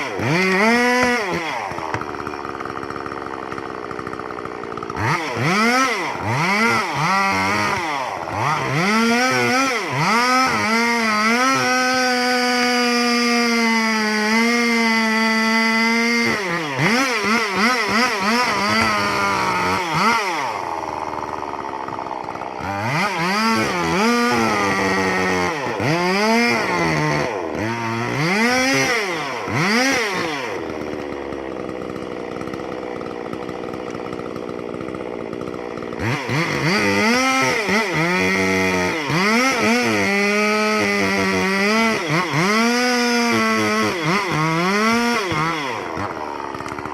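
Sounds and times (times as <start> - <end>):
chainsaw revving: 0.0 - 46.9.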